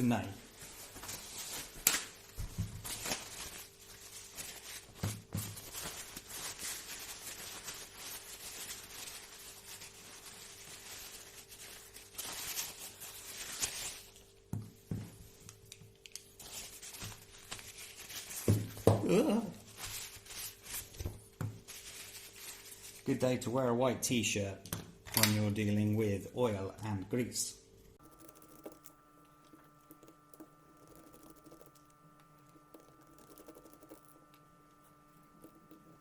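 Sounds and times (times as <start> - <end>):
faint steady hum: 0.0 - 36.0
paper rustling and tearing: 2.8 - 14.2.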